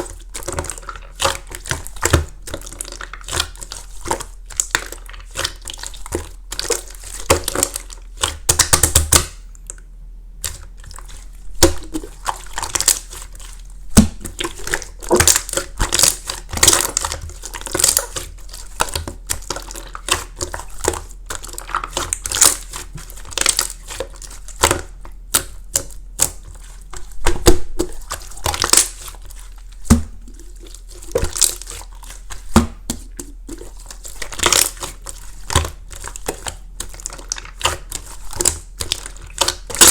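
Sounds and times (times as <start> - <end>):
crunchy slime squeezed by hand: 10.5 - 39.9.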